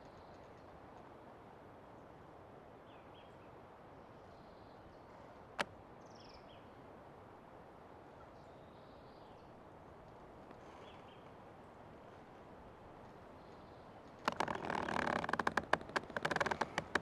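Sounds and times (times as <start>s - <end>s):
forest ambience: 0.0s - 17.0s
faint bird chirps: 10.6s - 11.3s.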